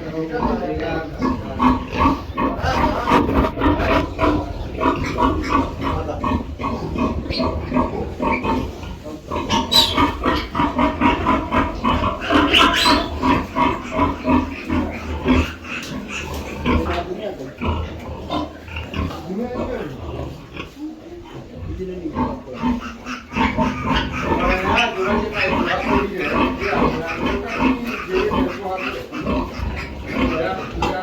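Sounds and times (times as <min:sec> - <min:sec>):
pigs grunting: 0:00.0 - 0:31.0
sharp high-pitched pig calls: 0:01.6 - 0:08.8, 0:09.4 - 0:16.9, 0:22.4 - 0:31.0.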